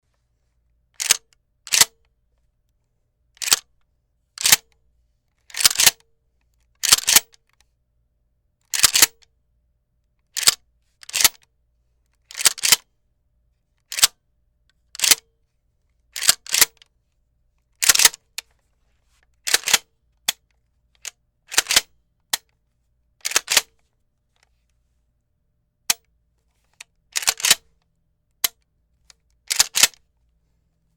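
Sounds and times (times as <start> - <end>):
shotgun slide racking: 1.0 - 1.9, 5.6 - 5.9, 19.5 - 19.8, 21.5 - 21.9, 23.2 - 23.7, 27.2 - 27.6, 29.5 - 30.0.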